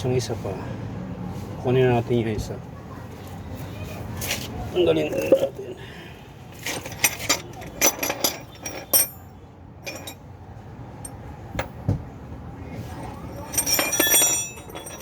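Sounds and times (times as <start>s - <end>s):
hand tools clinking on metal: 6.6s - 10.2s, 12.9s - 15.0s.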